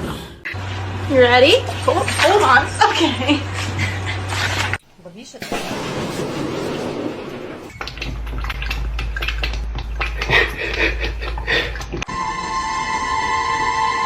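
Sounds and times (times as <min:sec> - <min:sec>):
music: 0:12.1 - 0:14.0.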